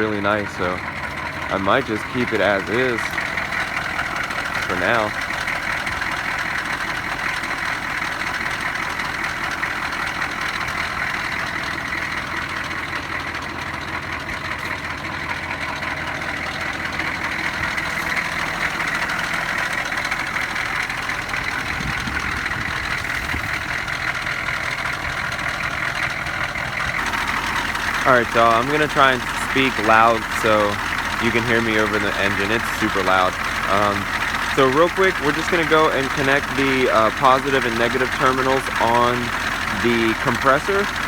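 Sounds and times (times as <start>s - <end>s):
truck engine idling: 0.0s - 41.0s.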